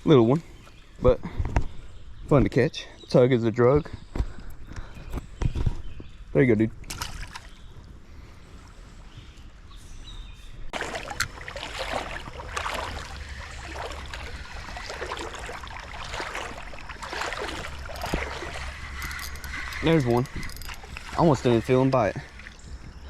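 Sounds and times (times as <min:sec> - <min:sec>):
creek water flowing: 0:10.7 - 0:22.8.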